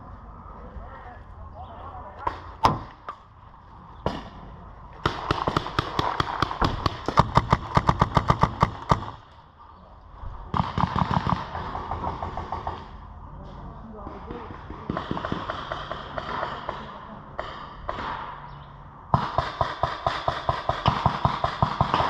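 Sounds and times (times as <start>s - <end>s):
paintball markers firing: 5.0s - 9.3s, 14.5s - 18.3s.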